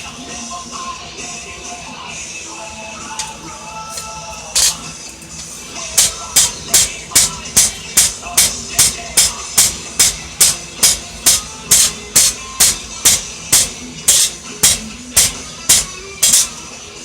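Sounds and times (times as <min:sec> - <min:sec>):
hammer striking steel on anvil: 0:04.6 - 0:04.9, 0:06.0 - 0:16.6.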